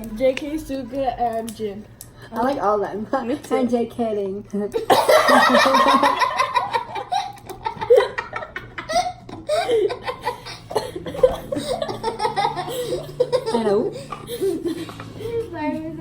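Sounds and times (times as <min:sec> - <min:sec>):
kids laughing: 0:04.8 - 0:15.4.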